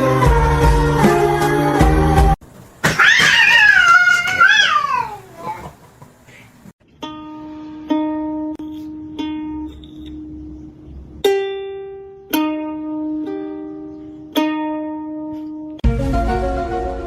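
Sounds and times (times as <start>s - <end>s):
slow plucked string melody: 6.8s - 15.9s.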